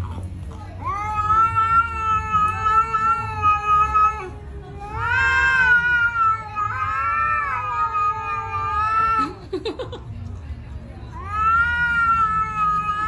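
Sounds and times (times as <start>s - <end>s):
cat yowling: 0.5s - 9.4s, 11.1s - 13.0s.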